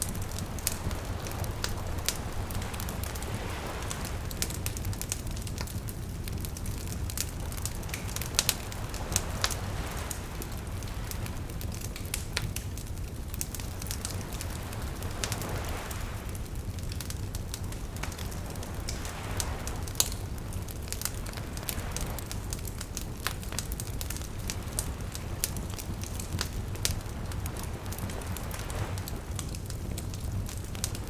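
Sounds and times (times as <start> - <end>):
gentle waves lapping: 0.0 - 23.4
wood fire crackling: 0.0 - 31.0.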